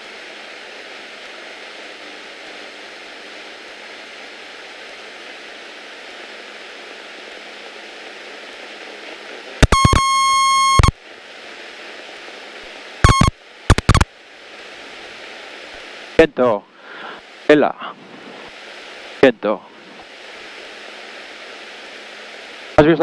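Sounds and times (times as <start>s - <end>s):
aircraft cockpit noise hiss: 0.0s - 23.0s
loud electronic beep: 9.6s - 10.9s, 13.1s - 14.0s.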